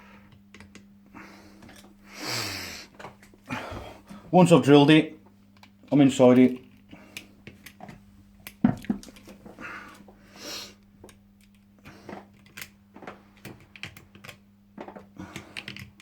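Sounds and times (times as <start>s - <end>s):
lock tools clicking and tapping: 13.4s - 16.0s.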